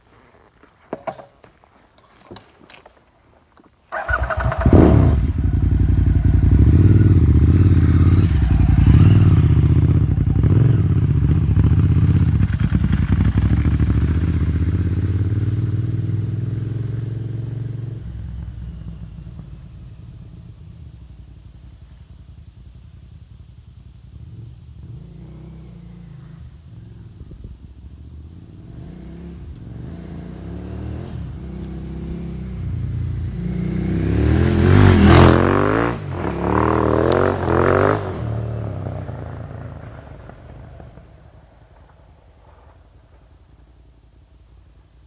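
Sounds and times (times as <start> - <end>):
motorcycle engine passing by: 3.9 - 43.0.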